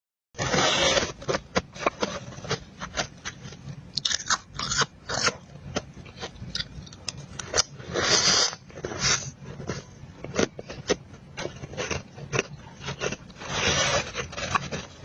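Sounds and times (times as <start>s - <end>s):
ice crunching when chewed: 3.9s - 15.0s.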